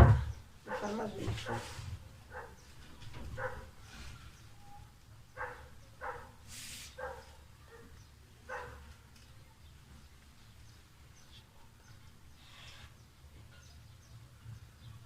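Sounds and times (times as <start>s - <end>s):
dog barking: 0.7s - 2.6s, 3.4s - 3.8s, 5.4s - 6.4s, 7.0s - 8.9s
brief hiss: 6.4s - 7.0s.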